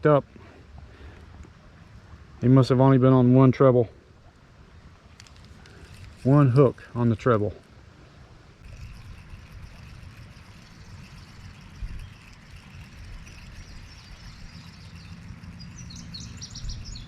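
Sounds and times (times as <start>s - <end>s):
wind buffeting microphone: 8.6s - 17.0s
birds chirping: 8.7s - 17.0s.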